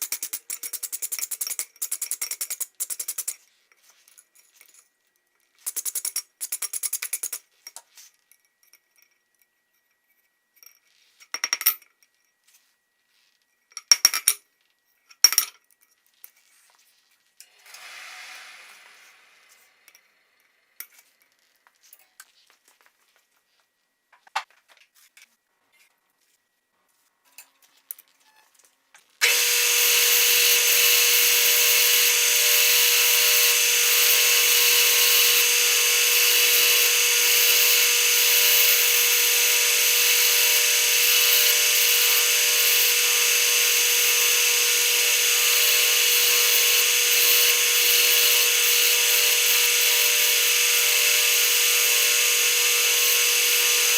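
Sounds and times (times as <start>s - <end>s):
power tool whining: 17.4s - 20.8s, 29.2s - 53.9s.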